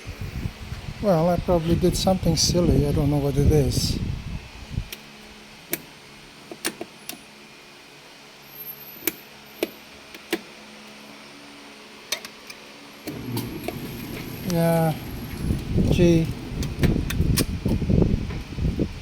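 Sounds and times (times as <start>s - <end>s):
steady low hum: 13.0s - 19.0s.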